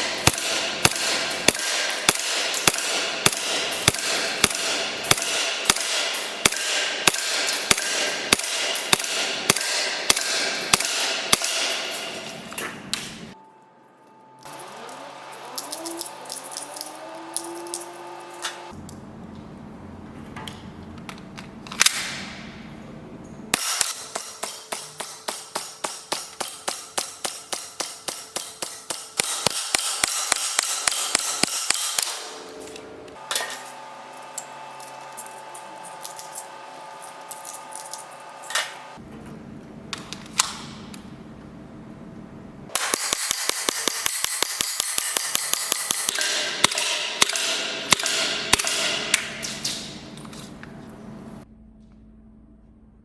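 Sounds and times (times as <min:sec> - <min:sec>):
airsoft pistol shots: 0:00.0 - 0:12.0, 0:23.6 - 0:32.4, 0:42.7 - 0:49.6.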